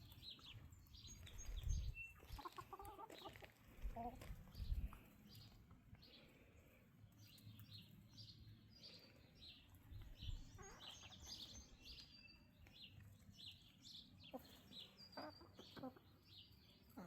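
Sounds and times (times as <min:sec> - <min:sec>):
low wind rumble: 0:01.3 - 0:02.0
faint bird chirps: 0:07.3 - 0:12.5.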